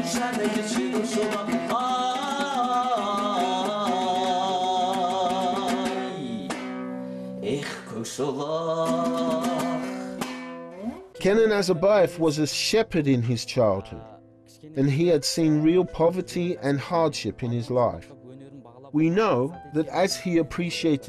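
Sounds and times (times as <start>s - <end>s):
plucked string accompaniment: 0.0s - 14.0s, 14.8s - 18.1s, 19.0s - 21.0s
person singing long wavering notes: 1.9s - 6.6s, 7.4s - 10.2s.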